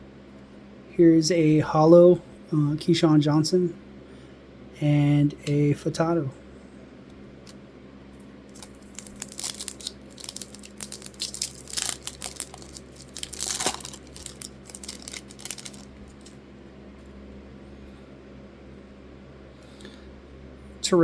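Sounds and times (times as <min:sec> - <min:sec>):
foil wrapper crinkling and tearing: 0:08.5 - 0:16.4.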